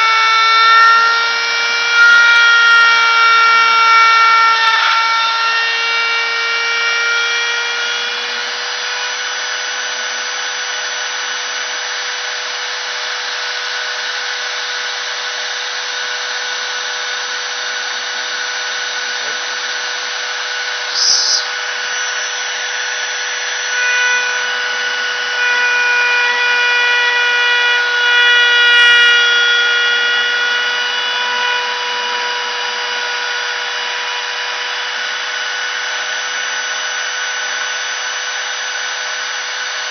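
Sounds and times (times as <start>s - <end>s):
cnc router spindle whine: 0.0s - 39.9s
router bit cutting: 0.0s - 39.9s
brief sharp noise: 20.9s - 21.5s.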